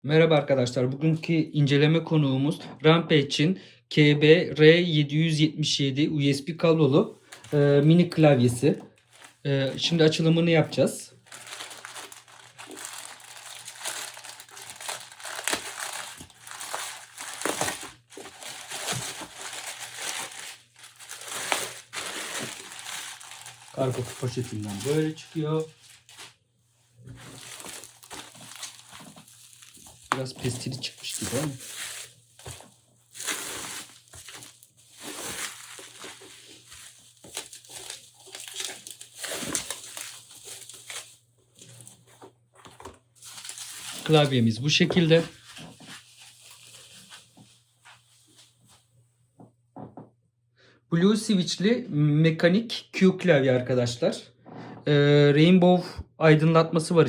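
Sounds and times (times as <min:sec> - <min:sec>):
plastic bag crinkling and rustling: 0:07.2 - 0:48.8.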